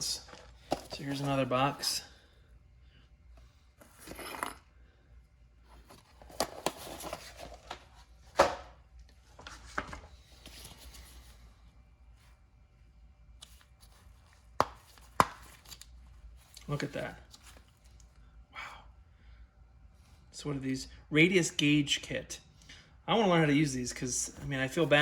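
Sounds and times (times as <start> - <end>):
tools rustling and scraping: 0.0 - 1.9, 3.8 - 4.7, 5.7 - 8.5.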